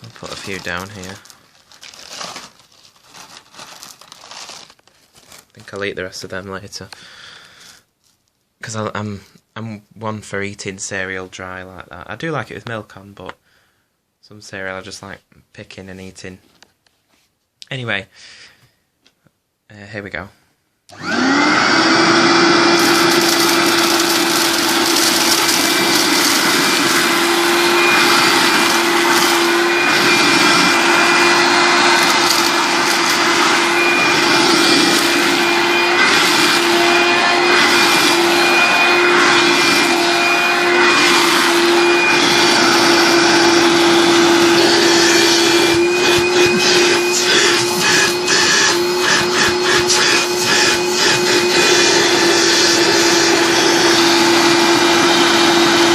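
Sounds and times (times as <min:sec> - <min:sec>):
cereal rattling in vacuum: 0:00.0 - 0:04.8, 0:22.8 - 0:30.8
handheld vacuum motor whine: 0:20.9 - 0:55.9.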